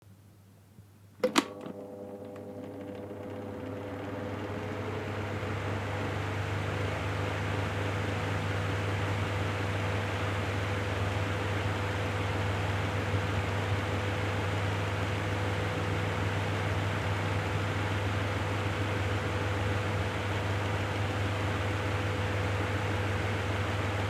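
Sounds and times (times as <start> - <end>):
fan switch clicks: 1.2 - 6.2
low motor hum: 1.2 - 10.0
electric fan whirring: 1.2 - 24.0.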